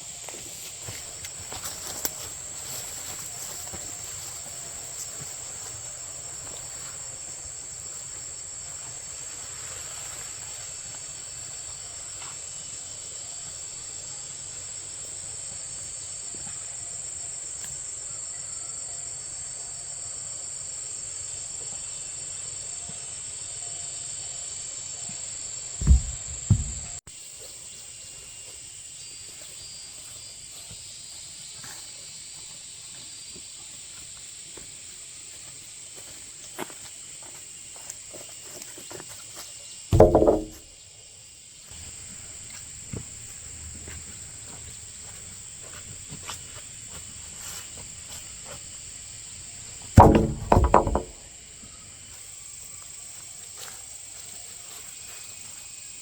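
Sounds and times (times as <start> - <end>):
insects chorus: 0.0 - 56.0
low thumps: 25.8 - 27.0, 40.0 - 40.7, 50.0 - 51.2.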